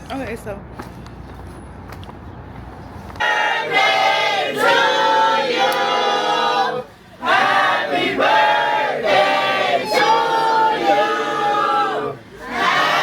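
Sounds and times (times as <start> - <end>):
group of voices singing: 3.2 - 13.0.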